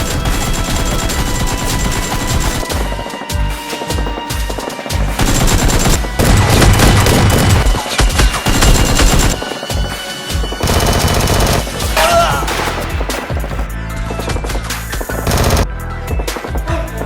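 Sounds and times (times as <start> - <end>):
machine-gun bursts: 0.0 - 4.0, 5.1 - 13.4, 15.2 - 15.6
background music: 0.0 - 17.0.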